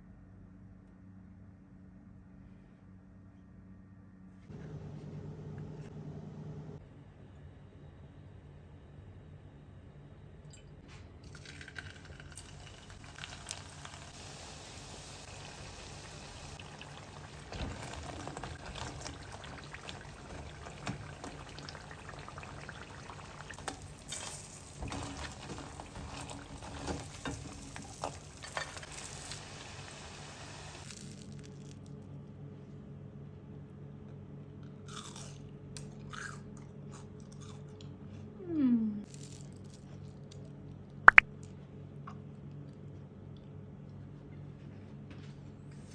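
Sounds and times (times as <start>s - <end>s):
oil crackles and pops: 11.2s - 32.0s
potato sticks sizzling in oil: 11.6s - 31.0s.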